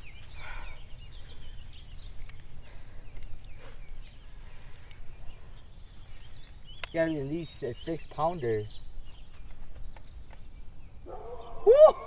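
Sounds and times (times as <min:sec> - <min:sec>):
bird chirps: 0:00.0 - 0:12.0
small clicks: 0:04.6 - 0:05.0.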